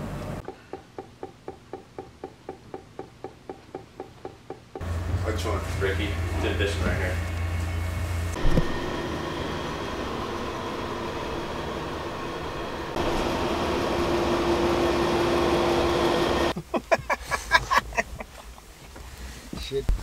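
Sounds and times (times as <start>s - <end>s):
road and engine rumble: 0.0s - 0.5s, 4.8s - 20.0s
steady hum: 4.8s - 16.6s.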